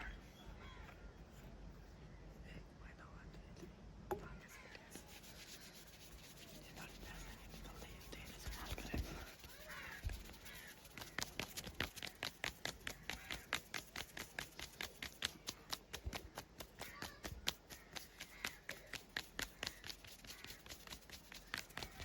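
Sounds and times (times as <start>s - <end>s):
fast sharp taps: 6.4s - 22.0s.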